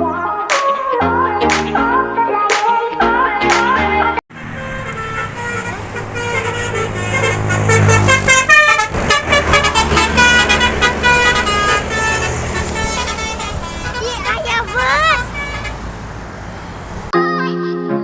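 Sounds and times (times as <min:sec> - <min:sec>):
bus engine rumble: 0:04.3 - 0:17.1
multi-tone musical bus horn: 0:04.3 - 0:17.1.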